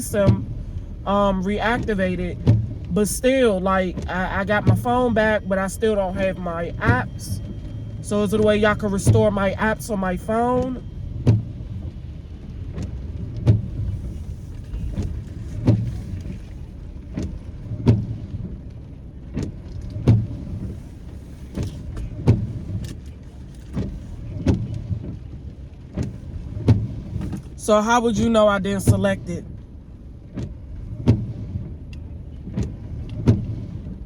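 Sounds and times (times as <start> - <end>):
car engine and road rumble: 0.0 - 34.0.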